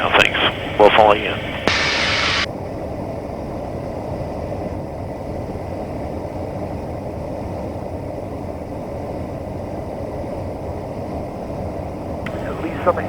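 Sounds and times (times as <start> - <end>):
faint high whine: 0.0 - 2.8, 12.2 - 13.0
turboprop engine drone: 0.0 - 13.0.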